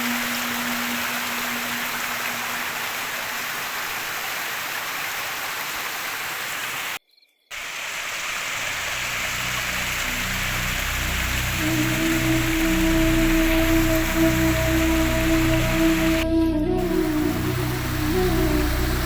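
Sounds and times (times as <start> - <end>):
waterfall rushing: 0.0 - 19.0
music with low sustained notes: 9.2 - 19.0.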